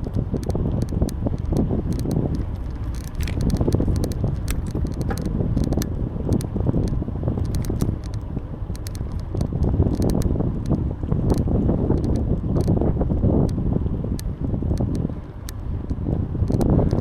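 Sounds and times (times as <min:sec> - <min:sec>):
bike clicks and rattles: 0:00.0 - 0:13.6, 0:14.2 - 0:17.0
wind buffeting microphone: 0:00.0 - 0:17.0.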